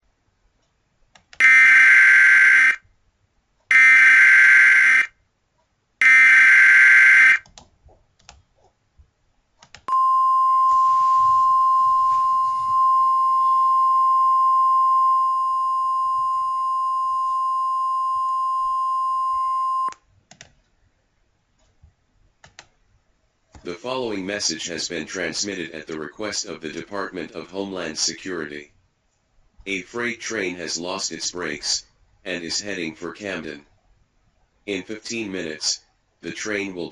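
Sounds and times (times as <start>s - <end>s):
steady attention tone: 9.9s - 20.0s.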